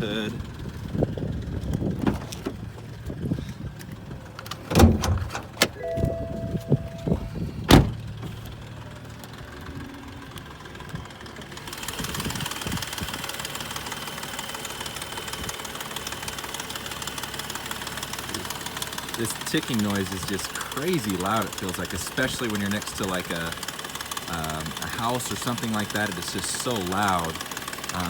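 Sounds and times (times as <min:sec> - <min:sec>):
car engine idling: 0:00.0 - 0:28.0
engine ticking: 0:00.0 - 0:28.0
car door and hood clunks: 0:01.8 - 0:02.9, 0:04.3 - 0:08.6.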